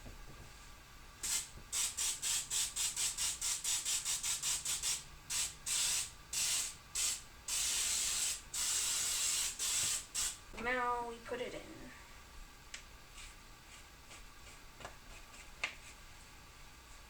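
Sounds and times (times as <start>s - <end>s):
aerosol spray hissing: 1.2s - 10.4s.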